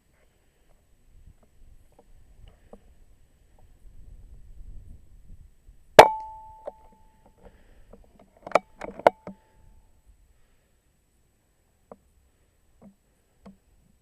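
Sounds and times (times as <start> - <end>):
air rifle shot with ringing ping: 6.0 - 7.0.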